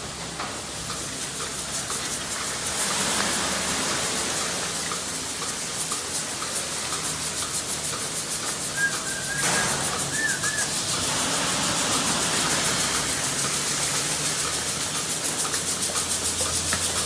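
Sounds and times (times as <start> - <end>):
milking machine pulsing hiss: 0.0 - 17.0
short squeaks: 8.8 - 10.8.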